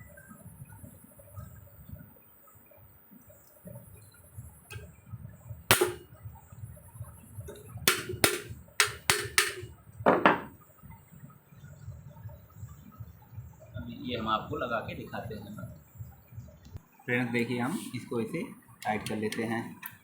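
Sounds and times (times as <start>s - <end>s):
hammer knocking on metal: 5.7s - 6.1s, 7.5s - 10.6s.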